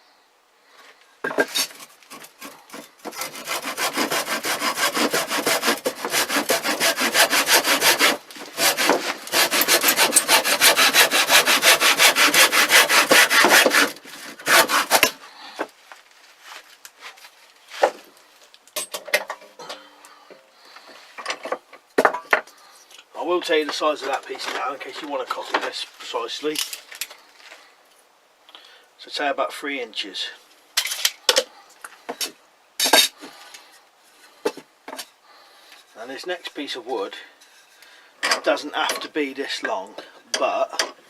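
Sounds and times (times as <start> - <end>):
hand saw cutting wood: 1.4 - 15.2.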